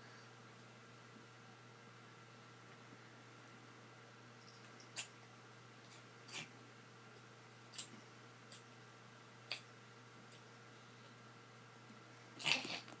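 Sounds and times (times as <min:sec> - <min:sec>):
cat hiccuping: 0:12.4 - 0:13.0.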